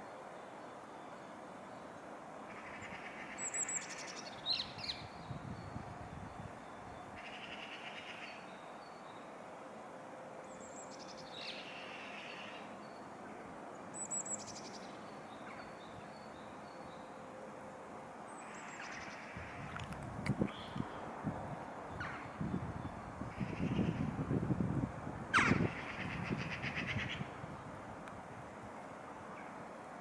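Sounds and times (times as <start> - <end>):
steady background hiss: 0.0 - 30.0
small birds calling: 21.9 - 24.1.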